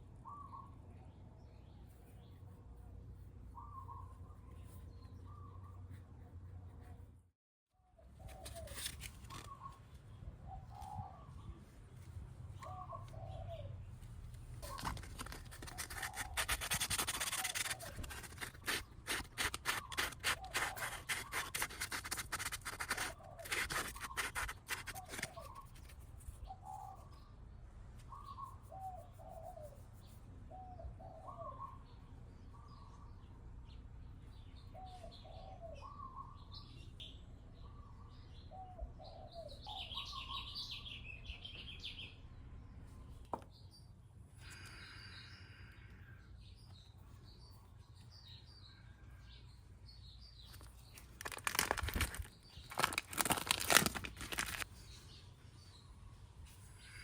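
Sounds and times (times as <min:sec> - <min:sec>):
scratchy scrubbing strokes: 0:14.7 - 0:26.0.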